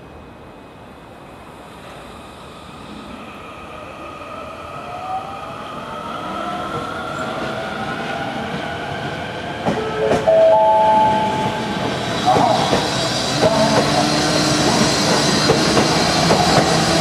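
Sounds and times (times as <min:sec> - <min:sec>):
loud steady high tone: 0:09.8 - 0:12.7.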